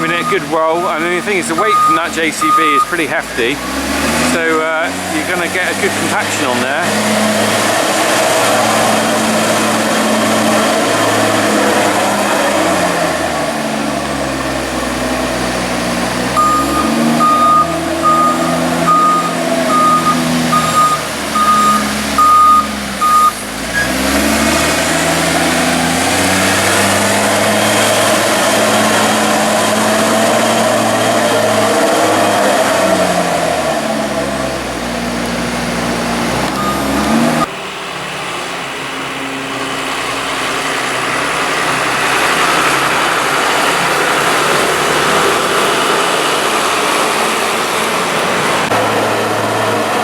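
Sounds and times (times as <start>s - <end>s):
reversing alarm beeping: 0.0s - 3.0s, 16.4s - 24.0s, 36.6s - 37.5s
loader engine working: 0.0s - 50.0s.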